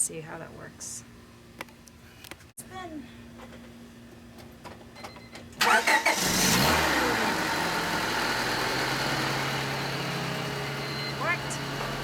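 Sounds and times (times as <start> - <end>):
starter cranking engine: 5.6 - 6.9
car engine idling: 5.6 - 12.0.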